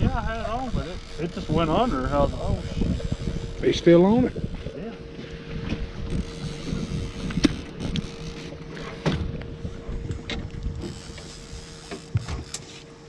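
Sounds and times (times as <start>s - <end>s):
steady hum: 0.0s - 13.0s
wind and water rumble: 0.0s - 13.0s
sharp knocks on boat: 9.0s - 9.3s.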